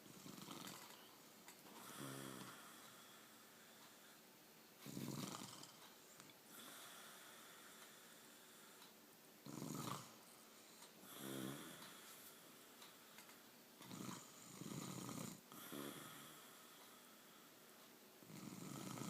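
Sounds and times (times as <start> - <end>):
woman snoring: 0.1 - 1.1, 1.8 - 3.3, 4.8 - 5.8, 9.5 - 10.2, 11.0 - 12.1, 13.9 - 16.7, 18.3 - 19.0.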